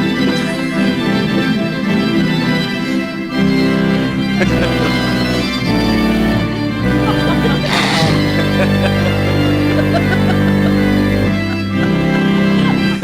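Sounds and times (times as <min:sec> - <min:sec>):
organ playing full chords: 0:03.6 - 0:12.6.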